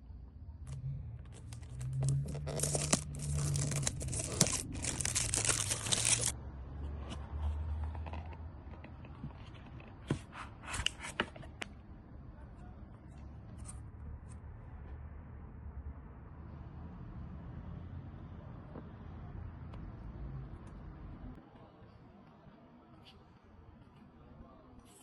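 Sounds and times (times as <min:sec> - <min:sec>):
packaging rustling: 0:01.3 - 0:06.4
packaging tearing and crinkling: 0:01.3 - 0:06.4.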